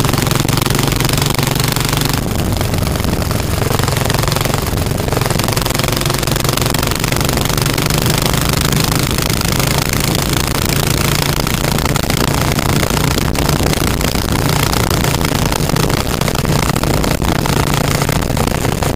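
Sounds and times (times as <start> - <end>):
motorcycle engine running: 0.0 - 18.9
wind and road noise: 0.0 - 18.9.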